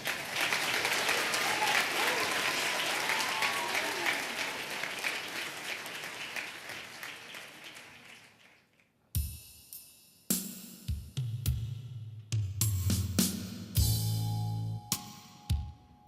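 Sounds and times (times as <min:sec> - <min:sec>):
audience applause: 0:00.0 - 0:08.9
drum kit and cymbal strikes: 0:09.2 - 0:16.0.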